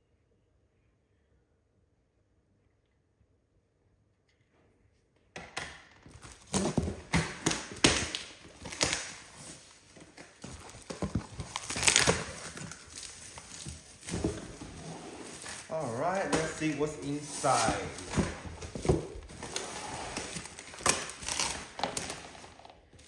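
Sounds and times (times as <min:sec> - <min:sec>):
cardboard scraping and rustling: 0:06.2 - 0:22.6
cardboard package knocks and taps: 0:10.4 - 0:12.7.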